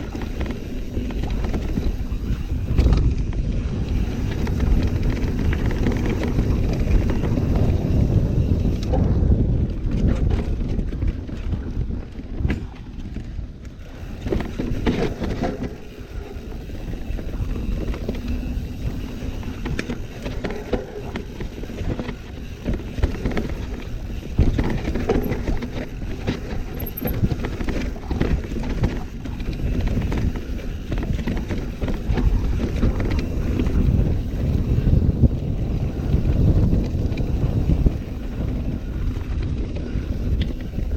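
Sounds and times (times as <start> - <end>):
bike rattling and knocking: 0.0 - 40.9
tyres rolling on dirt: 0.0 - 40.9
wind buffeting microphone: 0.0 - 40.9.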